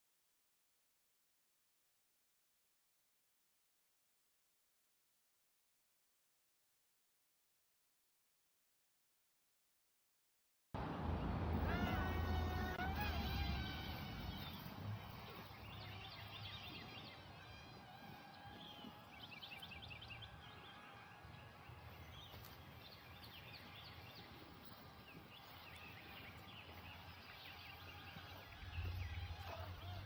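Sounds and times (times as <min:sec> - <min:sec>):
birds chirping: 0:10.8 - 0:30.0.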